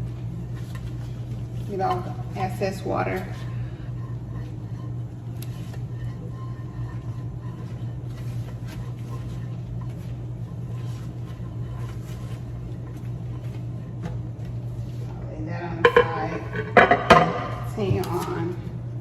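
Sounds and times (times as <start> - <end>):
steady low hum: 0.0 - 19.0
towel rubbing: 2.4 - 15.2.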